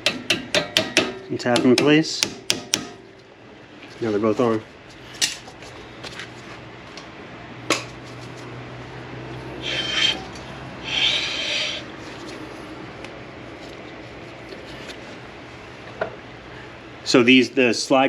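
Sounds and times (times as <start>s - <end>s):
sharp metal knock: 0.0s - 3.0s
rasping scrapes: 9.6s - 12.3s.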